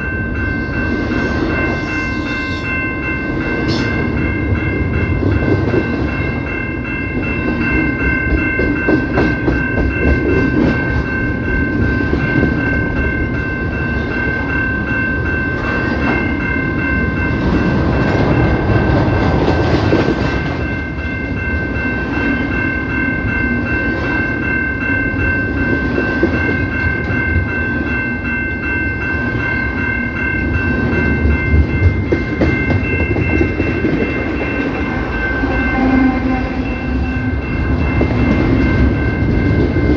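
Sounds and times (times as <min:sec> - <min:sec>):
high-pitched steady tone: 0:00.0 - 0:39.9
train wheels clattering: 0:03.5 - 0:13.5, 0:30.8 - 0:39.9.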